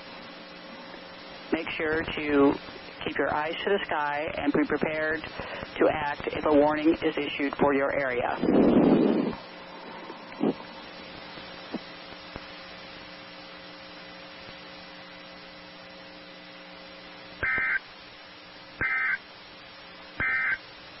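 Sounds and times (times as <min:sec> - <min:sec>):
steady low hum: 0:00.0 - 0:21.0
electronic data bursts: 0:17.4 - 0:17.8, 0:18.8 - 0:19.2, 0:20.2 - 0:20.6.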